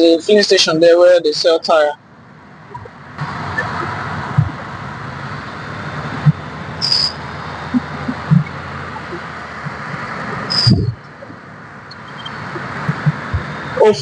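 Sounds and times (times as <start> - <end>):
vehicle road noise: 0.0 - 14.0
brief high squeak: 6.8 - 7.1.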